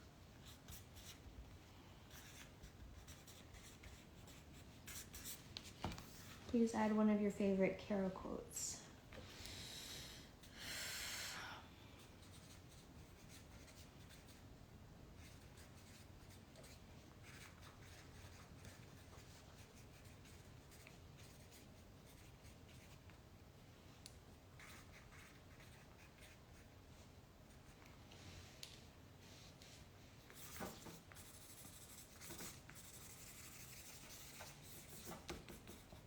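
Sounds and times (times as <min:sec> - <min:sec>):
marker pen scratching on paper: 0:00.4 - 0:01.2, 0:02.1 - 0:06.6, 0:12.2 - 0:14.4, 0:15.2 - 0:23.2, 0:24.6 - 0:26.8, 0:29.7 - 0:36.0.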